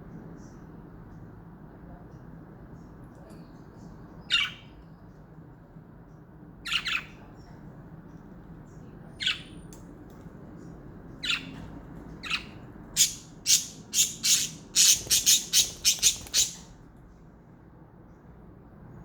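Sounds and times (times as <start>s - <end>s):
budgerigars chirping: 11.2s - 11.5s, 12.2s - 16.7s.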